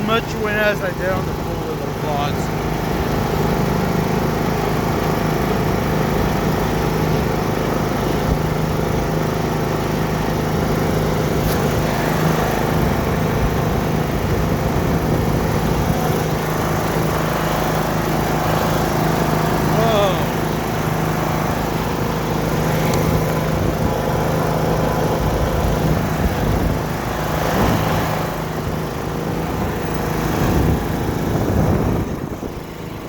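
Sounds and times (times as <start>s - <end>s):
riding lawn mower engine: 0.0s - 33.0s
wind on microphone: 29.4s - 32.8s.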